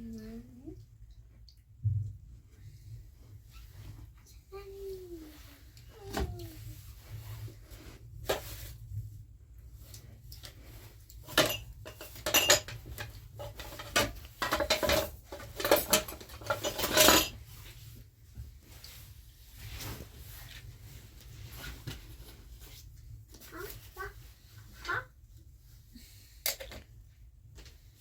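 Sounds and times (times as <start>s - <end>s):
kitchenware clinking and clattering: 11.2s - 17.6s.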